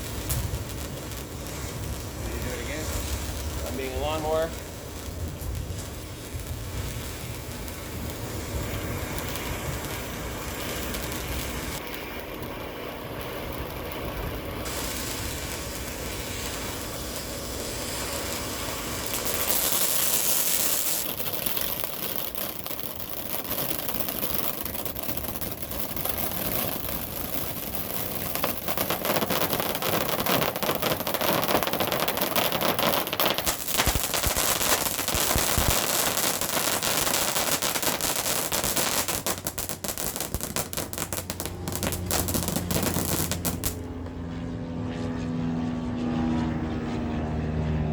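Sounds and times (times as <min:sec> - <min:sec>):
firework hiss: 0:00.0 - 0:43.9
firework crackling: 0:00.0 - 0:44.0
low rumble: 0:41.0 - 0:47.9.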